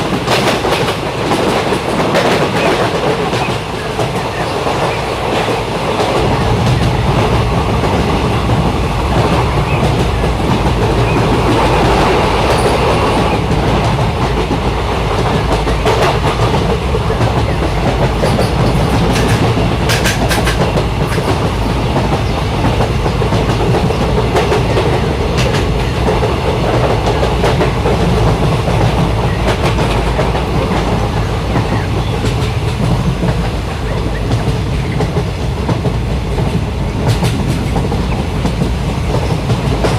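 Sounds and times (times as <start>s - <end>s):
train wheels rumbling on rails: 0.0s - 39.9s.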